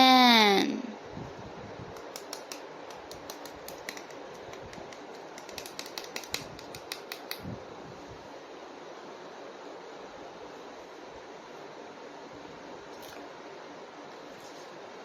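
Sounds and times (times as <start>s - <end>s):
plastic toys clicking: 2.0s - 7.4s.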